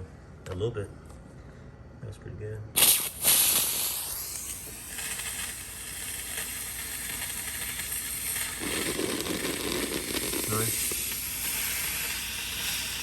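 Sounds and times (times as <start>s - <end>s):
steamer hissing: 2.8s - 13.0s.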